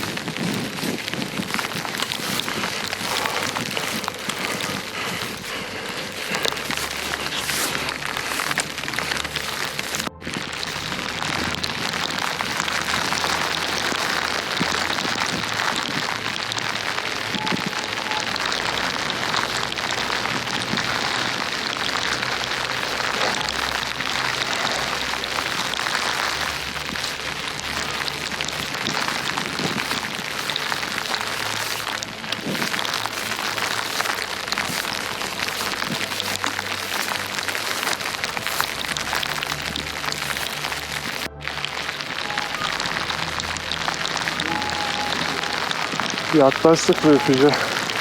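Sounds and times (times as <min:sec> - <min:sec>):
hail pattering: 0:00.0 - 0:48.0.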